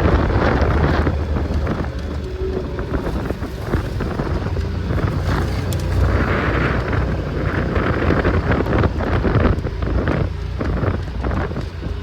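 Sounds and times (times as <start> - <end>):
vehicle engine running: 0.0 - 12.0
wind buffeting microphone: 0.0 - 12.0.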